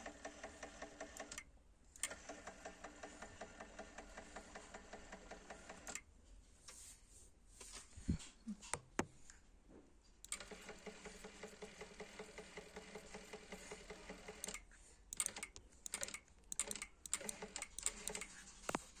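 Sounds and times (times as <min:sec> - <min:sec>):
sharp clicks and taps: 0:08.6 - 0:09.2.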